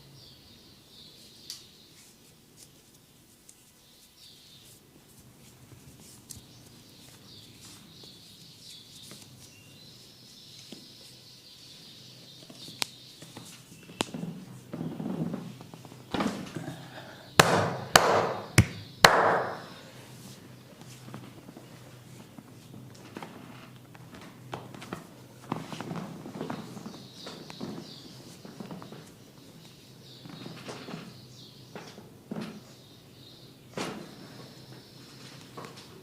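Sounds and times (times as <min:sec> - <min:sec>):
hands cracking and slapping on head: 0:17.4 - 0:19.7.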